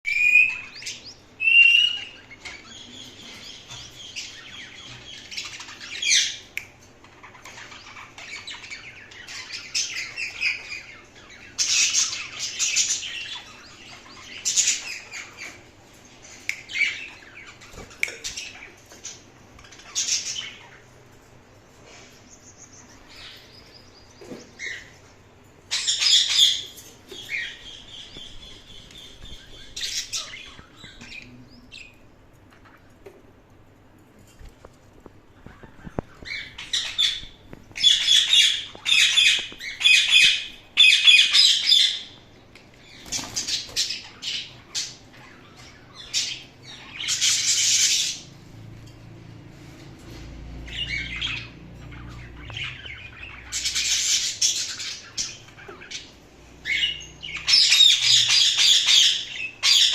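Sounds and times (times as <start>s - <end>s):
parrot chirping and calling: 0.1s - 15.6s, 25.7s - 32.0s, 35.4s - 42.2s, 42.9s - 48.3s, 50.7s - 59.9s.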